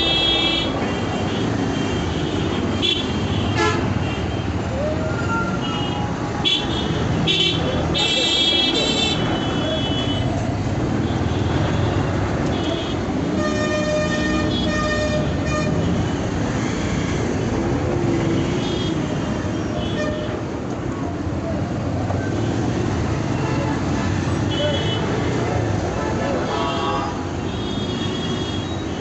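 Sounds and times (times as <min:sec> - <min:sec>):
vehicle horns honking: 0:00.0 - 0:04.5, 0:11.1 - 0:16.2, 0:18.4 - 0:20.4, 0:26.0 - 0:29.0
traffic rumble: 0:00.0 - 0:29.0.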